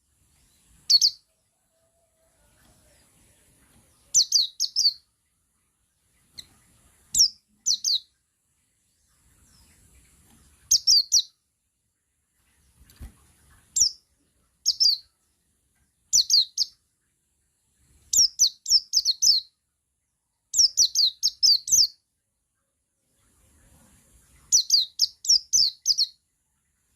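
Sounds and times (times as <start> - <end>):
bird singing high chirps: 0.4 - 1.3, 4.0 - 5.1, 6.3 - 8.1, 10.6 - 11.4, 13.7 - 14.0, 14.6 - 15.1, 16.1 - 16.8, 18.1 - 19.6, 20.5 - 22.0, 24.5 - 26.2.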